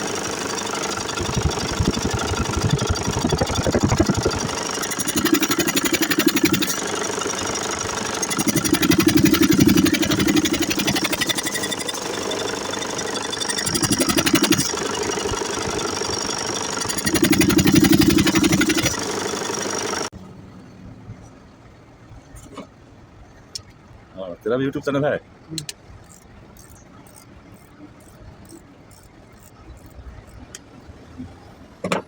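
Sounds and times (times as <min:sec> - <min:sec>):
truck diesel engine clattering: 0:00.0 - 0:21.8.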